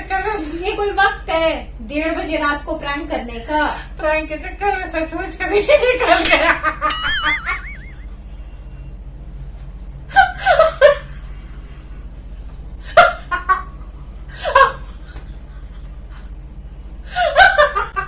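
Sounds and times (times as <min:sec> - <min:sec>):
steady low hum: 0:00.0 - 0:18.0
laughter: 0:05.5 - 0:08.0, 0:10.1 - 0:11.2, 0:12.9 - 0:16.4, 0:17.1 - 0:18.0.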